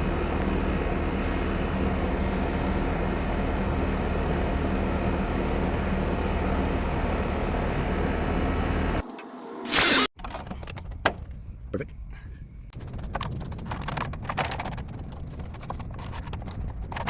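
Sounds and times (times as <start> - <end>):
compressor hum: 0.0 - 10.1
fan rushing: 0.0 - 10.1.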